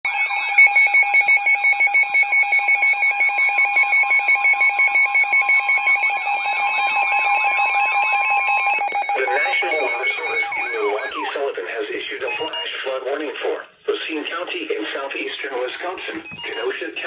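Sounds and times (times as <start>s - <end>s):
electronic alarm pulsing rapidly: 0.1s - 11.4s, 12.3s - 12.6s, 16.1s - 16.7s.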